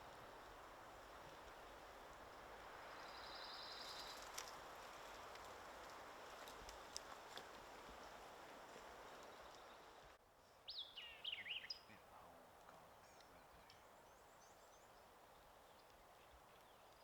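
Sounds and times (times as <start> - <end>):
soft hiss: 0.0 - 11.7
faint bird chirps: 3.0 - 4.2.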